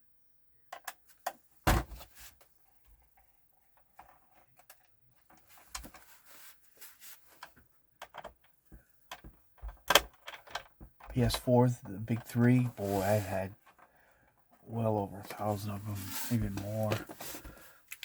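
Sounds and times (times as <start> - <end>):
plastic clicks and knocks: 7.4 - 11.3.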